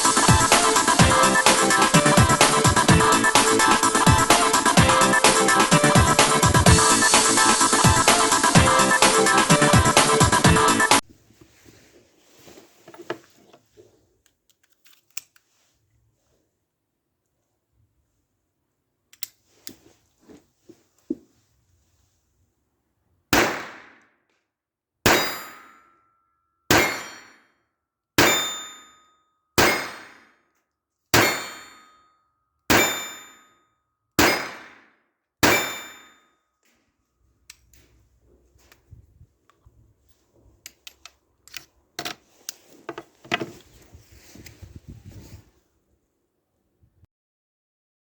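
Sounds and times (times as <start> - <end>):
pistol shots: 23.3 - 24.0, 25.0 - 25.6, 26.7 - 27.3, 28.2 - 28.6, 29.6 - 30.3, 31.2 - 31.8, 32.7 - 33.3, 34.2 - 36.0.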